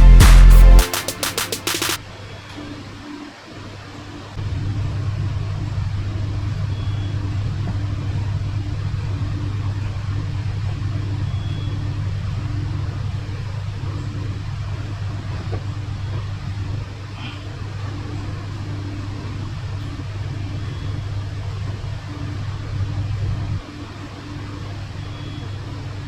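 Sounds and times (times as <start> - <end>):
faint pulsing beat: 0.0 - 2.0.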